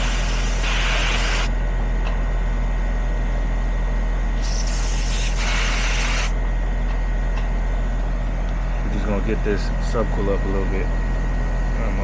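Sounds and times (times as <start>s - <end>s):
refrigerant hissing through hose: 0.0s - 1.5s, 4.4s - 6.3s
heat pump unit humming: 0.0s - 12.0s.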